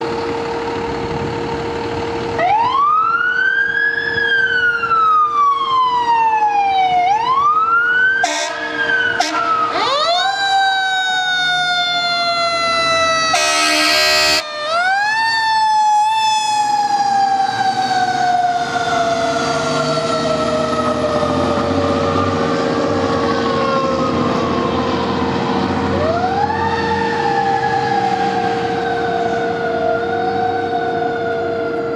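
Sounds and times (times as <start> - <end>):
fire sirens wailing: 0.0 - 31.9
air horn blasts: 8.2 - 9.7, 13.3 - 14.6.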